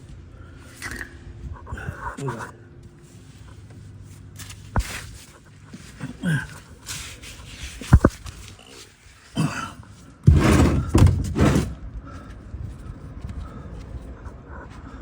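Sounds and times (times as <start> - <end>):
rough handling noise and clatter: 10.2 - 11.8.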